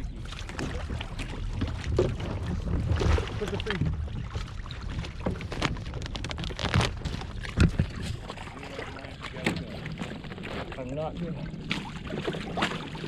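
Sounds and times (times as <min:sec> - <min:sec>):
water against kayak hull: 0:00.0 - 0:13.0
wind on microphone: 0:00.0 - 0:13.0.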